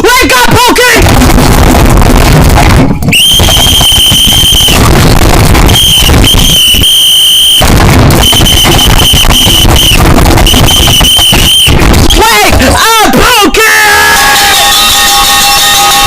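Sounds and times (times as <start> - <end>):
loud distorted noise: 0.0 - 16.0
shrill high-pitched alarm tone: 3.1 - 4.9, 5.6 - 12.7, 13.9 - 16.0.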